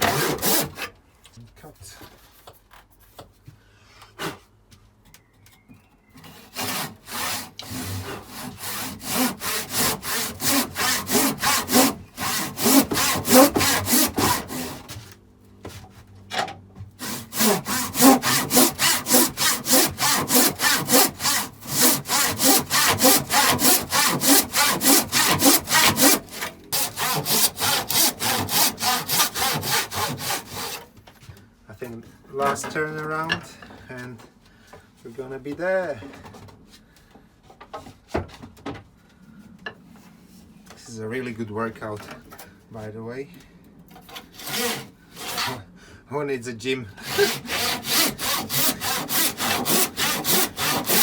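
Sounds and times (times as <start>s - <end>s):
handsaw sawing timber: 0.0s - 0.9s, 6.2s - 15.1s, 17.0s - 30.9s, 44.1s - 45.7s, 47.0s - 51.0s.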